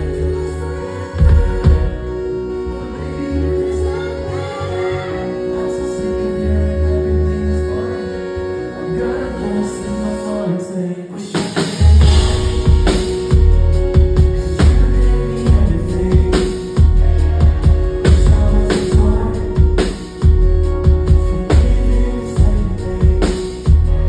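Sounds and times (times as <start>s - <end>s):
pop song with singing: 0.0s - 24.0s
heavy bass and drum hits: 11.8s - 24.0s.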